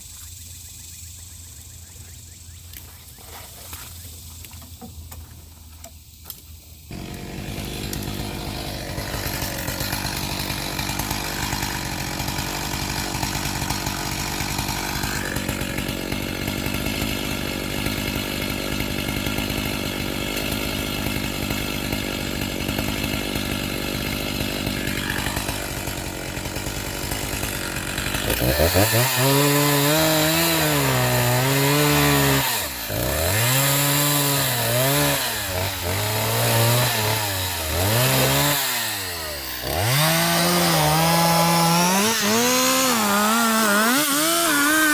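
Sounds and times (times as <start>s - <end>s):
chainsaw engine revving: 6.9s - 44.9s.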